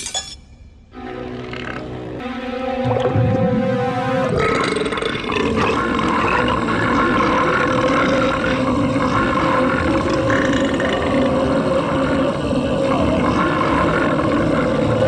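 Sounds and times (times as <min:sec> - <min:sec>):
long cartoon belch: 0:04.1 - 0:15.0.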